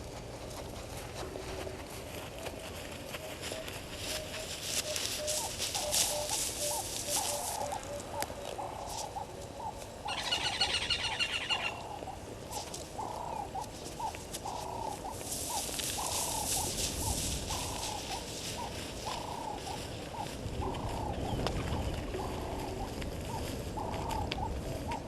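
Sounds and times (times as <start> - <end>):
bird low looping call: 1.2 - 25.0
rapid high bird chirps: 9.2 - 12.2.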